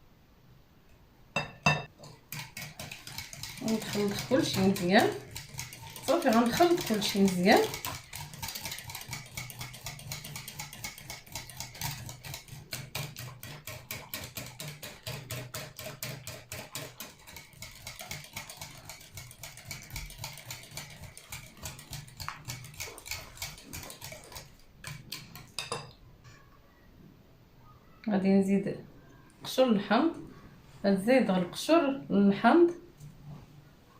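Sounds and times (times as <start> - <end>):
batter beaten in a bowl: 1.4 - 25.9.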